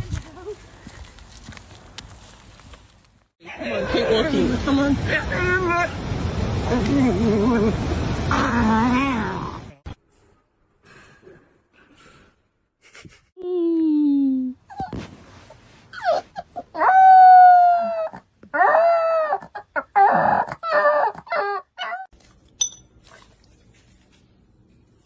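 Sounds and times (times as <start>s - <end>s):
dog howling and whining: 16.0s - 22.1s.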